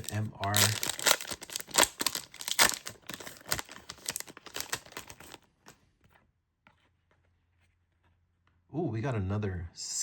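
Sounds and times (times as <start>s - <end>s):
foil wrapper crinkling and tearing: 0.0s - 5.4s
cards being handled: 0.0s - 7.2s.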